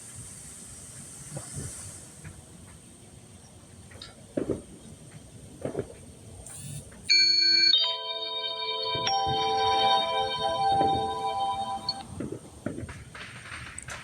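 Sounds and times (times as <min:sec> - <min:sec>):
steady hiss: 0:00.0 - 0:07.0
small fireworks bangs: 0:00.0 - 0:07.1, 0:08.8 - 0:14.0.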